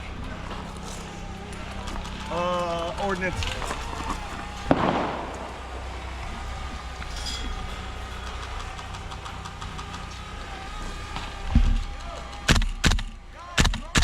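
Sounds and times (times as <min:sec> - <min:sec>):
motor hum with faint whine: 0:00.0 - 0:14.0
dull thump: 0:10.6 - 0:14.0.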